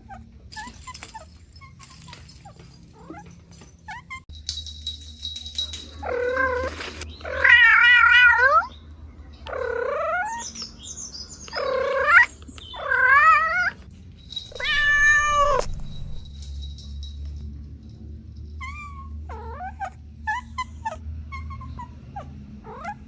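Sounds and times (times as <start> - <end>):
cat meowing: 6.0 - 8.7, 14.5 - 16.2.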